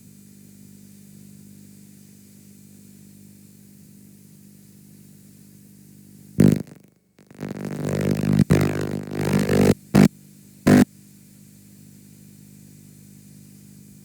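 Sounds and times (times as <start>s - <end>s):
distorted buzzy garbled audio: 6.4s - 10.1s
steady low hum: 6.4s - 10.1s.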